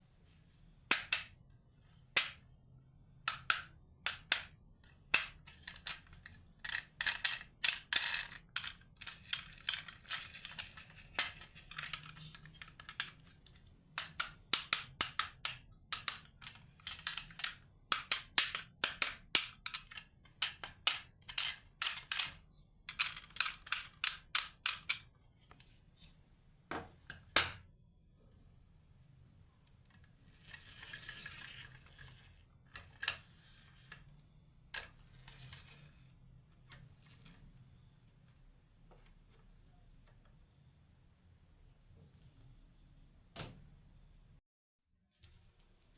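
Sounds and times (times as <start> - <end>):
marbles rolling on wooden run: 3.3 - 25.1, 29.9 - 37.9.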